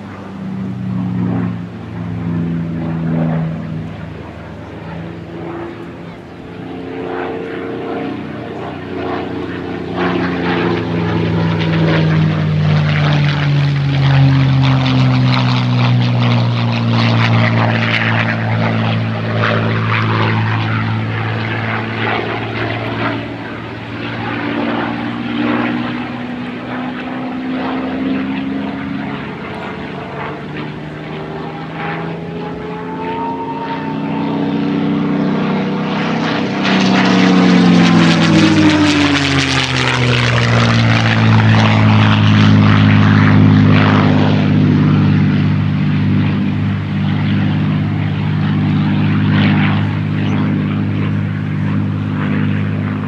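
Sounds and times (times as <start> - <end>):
propeller plane engine fly-by: 0.0 - 53.0.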